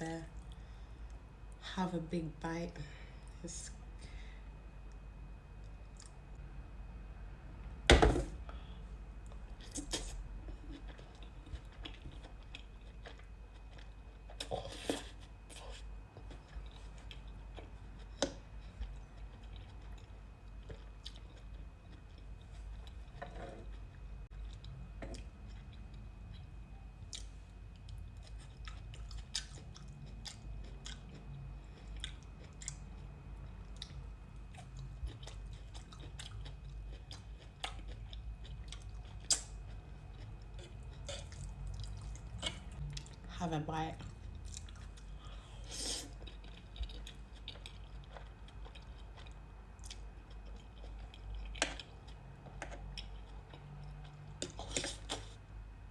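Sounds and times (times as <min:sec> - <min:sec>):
person chewing and slurping noodles: 0:09.6 - 0:27.4, 0:28.2 - 0:33.1, 0:33.7 - 0:43.2, 0:44.0 - 0:55.4.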